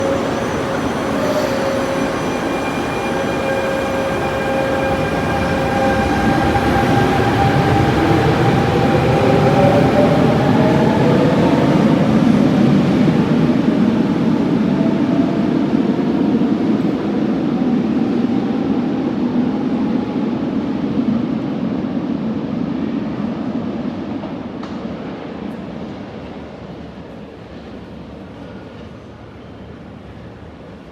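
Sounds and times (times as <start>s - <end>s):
electric train whine: 0.0s - 22.9s.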